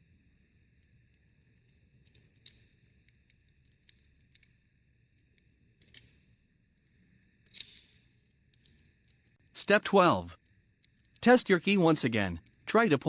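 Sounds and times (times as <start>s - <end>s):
clicks of metal lock parts: 5.8s - 6.2s, 7.4s - 9.2s.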